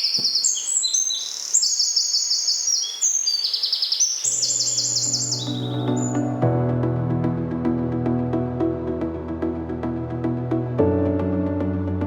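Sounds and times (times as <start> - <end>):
songbirds singing: 0.0 - 6.4
music with low sustained notes: 4.7 - 12.0.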